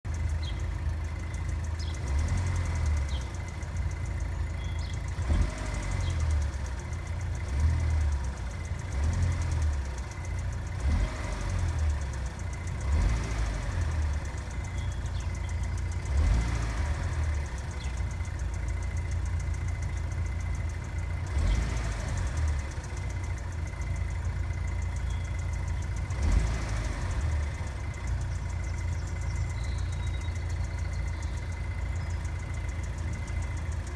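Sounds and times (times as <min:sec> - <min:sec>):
car engine idling: 0:00.0 - 0:33.9
rapid engine ticking: 0:00.0 - 0:33.9.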